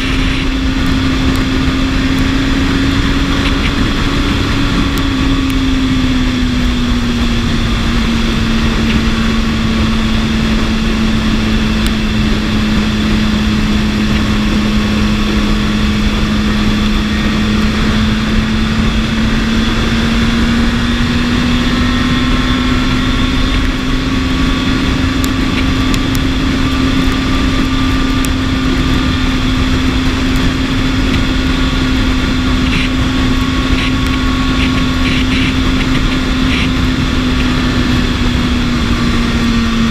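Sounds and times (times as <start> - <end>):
motorcycle engine cruising: 0.0 - 39.9
wind and road rushing: 0.0 - 39.9.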